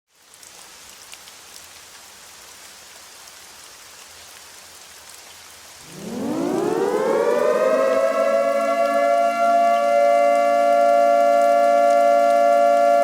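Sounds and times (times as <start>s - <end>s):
steady rain falling: 0.1s - 13.0s
siren winding up: 5.9s - 13.0s.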